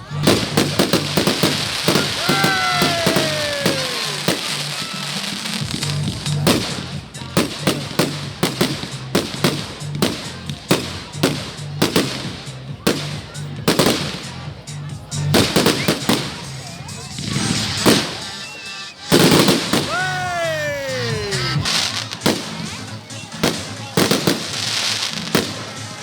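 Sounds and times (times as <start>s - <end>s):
fireworks bangs and cracks: 0.0s - 14.3s, 15.3s - 18.4s, 19.1s - 22.8s, 23.4s - 26.0s
low music beat: 19.8s - 21.7s.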